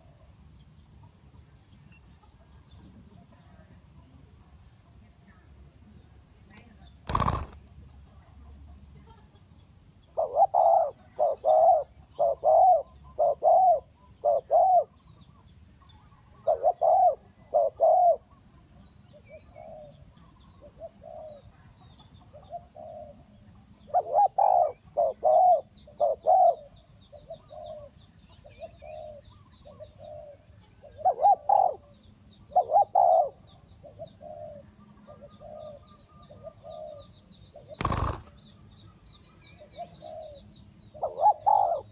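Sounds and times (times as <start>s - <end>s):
doves cooing: 10.2s - 15.1s, 16.1s - 18.5s, 19.1s - 38.4s, 39.6s - 41.9s.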